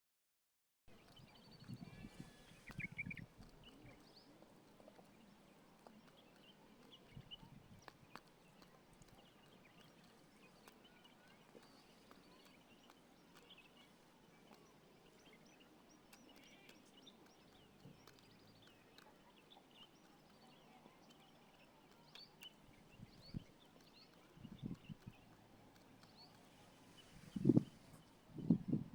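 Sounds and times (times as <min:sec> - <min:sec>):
faint chirps and clicks: 0:00.9 - 0:28.9.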